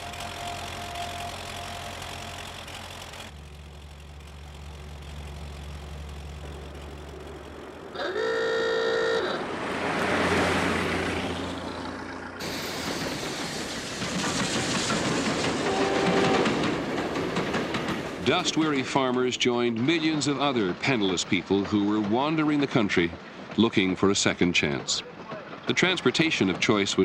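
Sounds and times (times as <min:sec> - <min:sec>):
train whistle: 0:00.0 - 0:02.4, 0:08.0 - 0:09.6, 0:15.6 - 0:16.6
rumble and clatter of moving train: 0:00.0 - 0:08.4, 0:09.4 - 0:27.0.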